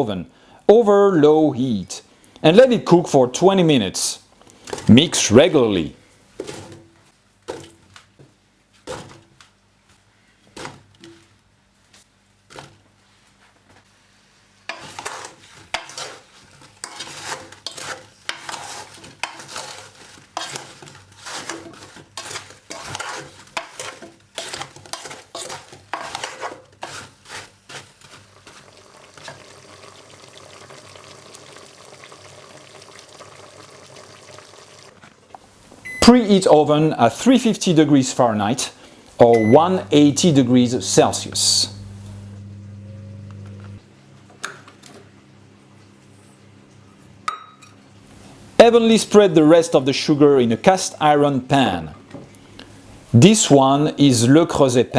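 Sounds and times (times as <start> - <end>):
utensil scraping a pot: 14.7 - 29.5
gentle sizzle: 26.8 - 36.3, 39.3 - 43.8.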